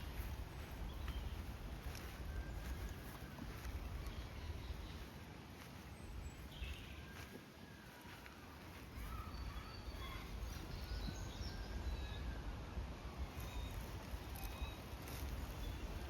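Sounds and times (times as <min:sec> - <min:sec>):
faint bird calls: 0:00.0 - 0:12.3.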